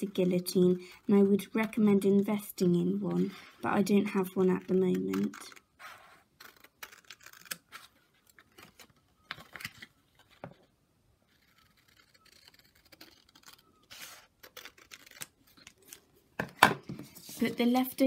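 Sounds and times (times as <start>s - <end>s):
scissors cutting card: 4.7s - 5.6s.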